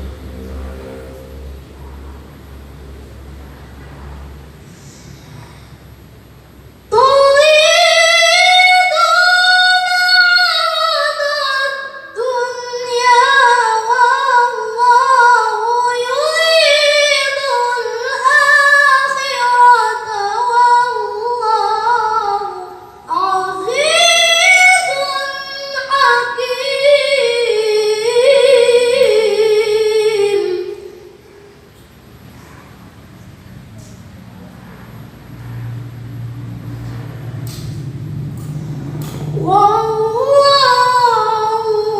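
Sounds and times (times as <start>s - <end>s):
boy reciting melodically: 6.8s - 31.5s, 38.6s - 41.9s.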